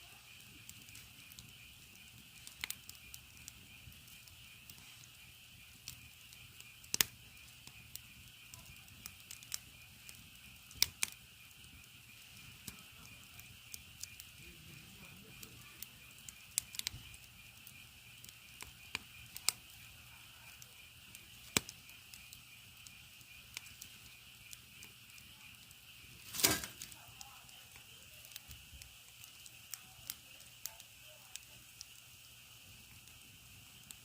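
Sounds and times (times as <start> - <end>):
firewood crackling and popping: 0.0 - 34.0
insects chirring: 0.0 - 34.0.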